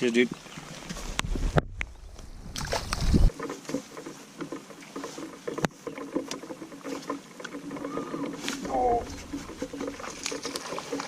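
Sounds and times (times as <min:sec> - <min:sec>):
microphone rumble and bump: 0:00.9 - 0:03.3, 0:08.4 - 0:10.3
small ticks and knocks: 0:00.9 - 0:11.0
rain pattering: 0:02.9 - 0:11.0.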